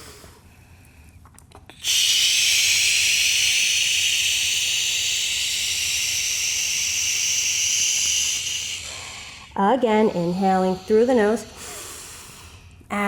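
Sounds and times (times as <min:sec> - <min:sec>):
slow exhale through mouth: 0:01.8 - 0:09.6, 0:11.5 - 0:12.7.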